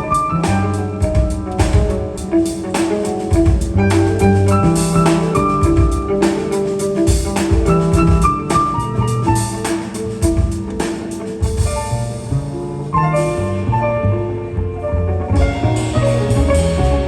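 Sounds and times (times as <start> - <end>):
jazz piano trio playing: 0.0 - 17.0
drum and cymbal hits: 0.1 - 12.4.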